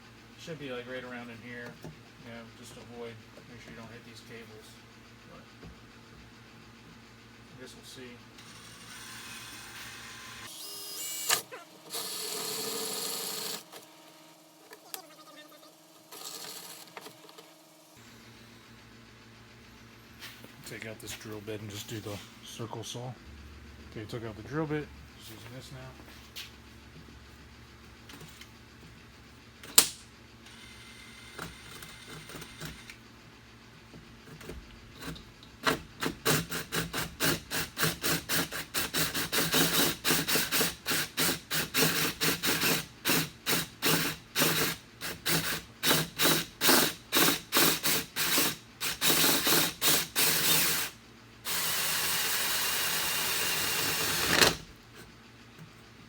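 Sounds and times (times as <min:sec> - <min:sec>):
cordless drill cutting with hole saw: 0:08.4 - 0:13.8, 0:36.3 - 0:54.6
sharp click: 0:29.7 - 0:30.1.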